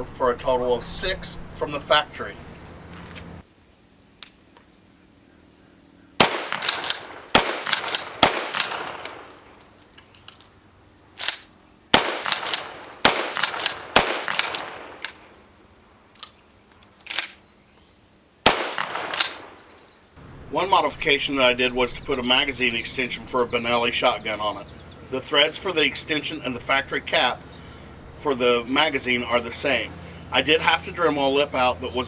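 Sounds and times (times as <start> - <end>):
shotgun shots echoing: 6.2 - 9.6, 11.2 - 15.4, 18.4 - 19.8.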